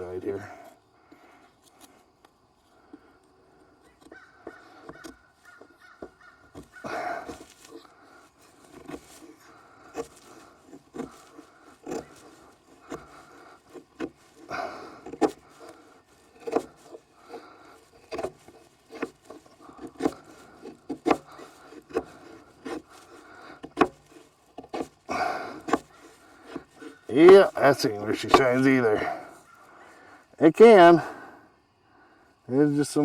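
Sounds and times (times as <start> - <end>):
blade scraping in wood: 0.6 - 29.6
knife chopping into wood: 3.9 - 29.4.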